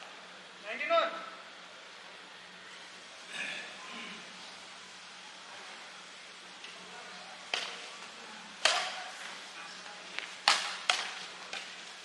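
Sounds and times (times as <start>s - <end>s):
racket hitting shuttlecock: 7.5s - 7.8s, 8.6s - 9.2s, 10.2s - 11.8s.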